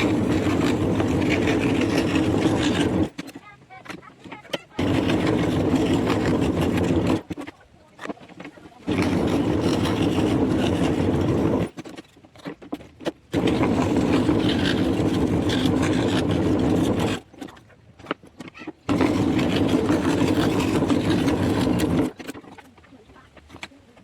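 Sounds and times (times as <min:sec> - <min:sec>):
scroll saw running: 0:00.0 - 0:04.0, 0:04.8 - 0:07.5, 0:08.1 - 0:12.0, 0:13.3 - 0:17.6, 0:18.9 - 0:22.5.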